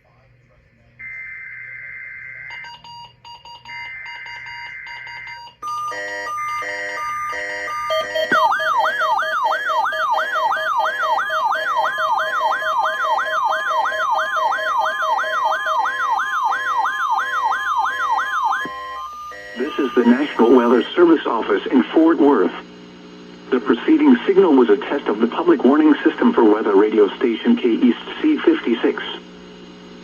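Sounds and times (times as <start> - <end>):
electronic siren-like alarm: 1.0 - 22.7, 23.8 - 29.3
pulsed beeping: 1.0 - 29.8
two-tone digital warble: 6.6 - 22.4.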